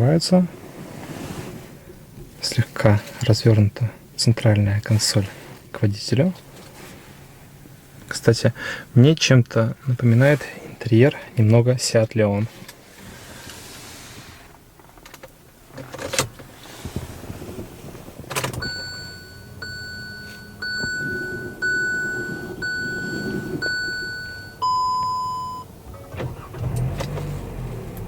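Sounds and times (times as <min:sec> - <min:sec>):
dashboard warning chimes: 0:18.6 - 0:25.7
lower warning tone: 0:18.6 - 0:25.7.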